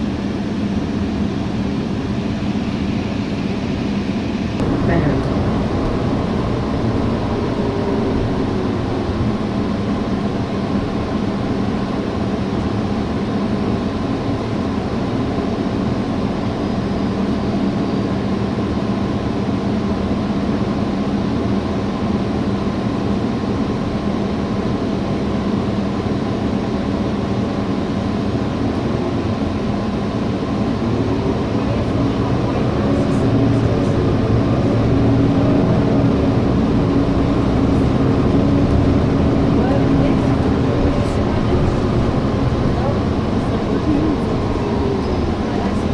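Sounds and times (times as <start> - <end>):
bus engine drone and road rumble: 0.0 - 45.9.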